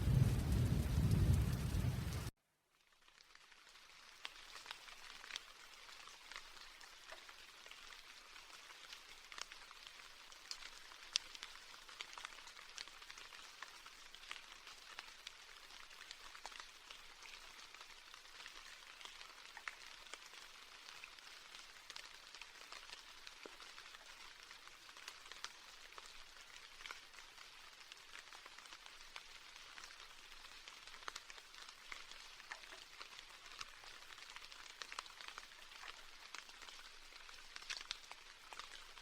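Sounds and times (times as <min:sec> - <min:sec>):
rain drop ticks: 0:00.0 - 0:02.3, 0:03.1 - 0:39.0
steady rain hiss: 0:00.0 - 0:02.3.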